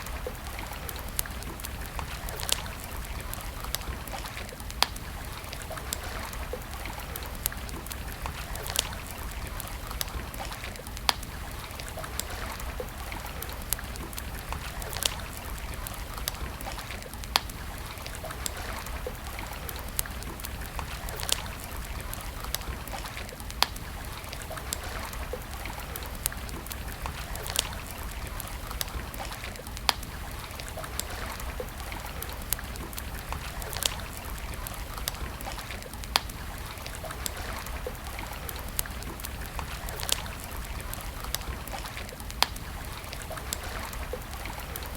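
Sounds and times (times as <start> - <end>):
campfire crackling and popping: 0.0 - 44.9.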